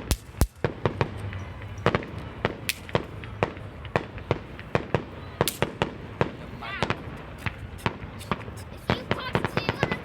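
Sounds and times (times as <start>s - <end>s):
fireworks banging and cracking: 0.0s - 10.0s.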